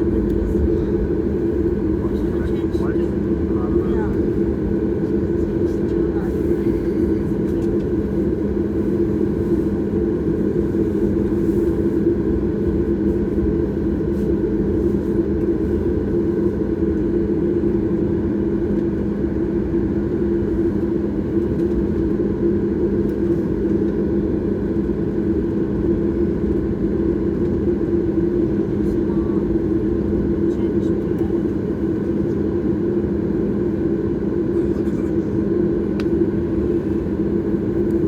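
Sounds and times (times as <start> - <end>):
low rumble: 0.0 - 9.2
jet engines droning: 0.0 - 38.0
steady cabin hum: 0.0 - 38.0.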